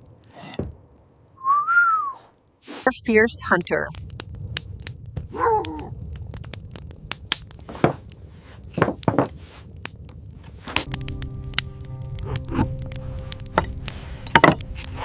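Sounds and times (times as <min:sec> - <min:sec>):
crunching and clicking: 0:03.4 - 0:15.0.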